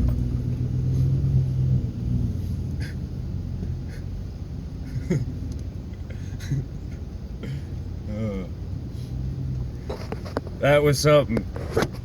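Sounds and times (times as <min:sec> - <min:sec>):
pickup engine running low: 0:00.0 - 0:12.0.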